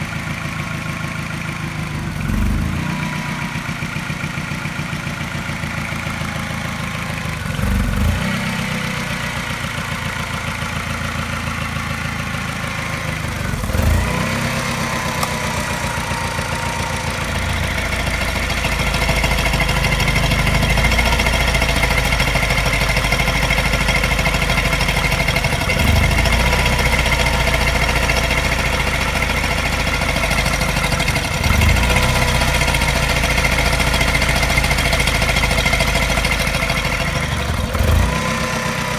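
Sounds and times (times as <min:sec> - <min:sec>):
car engine idling with tap: 0:09.3 - 0:38.9.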